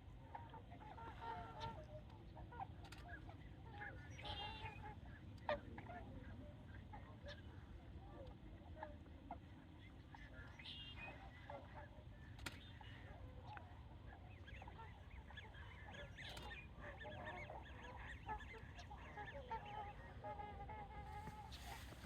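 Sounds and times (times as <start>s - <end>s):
swans honking: 17.4s - 22.0s.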